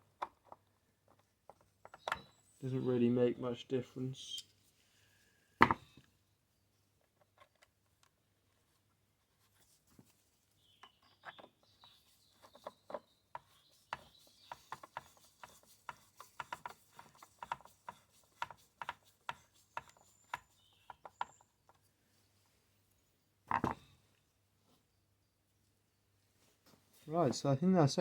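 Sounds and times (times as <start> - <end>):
hand tools clicking and knocking: 12.5 - 21.8.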